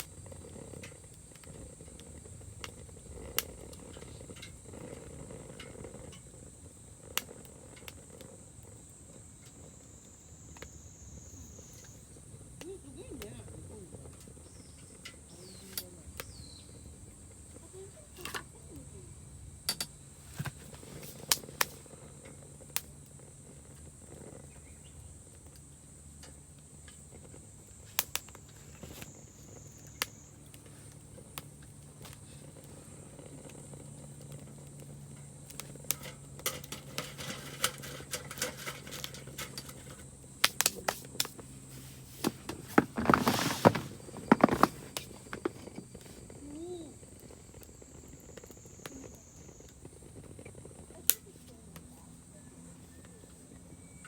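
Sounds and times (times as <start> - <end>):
insects chirring: 0.0 - 54.0
sharp clicks and snaps: 28.0 - 28.4, 40.4 - 41.4.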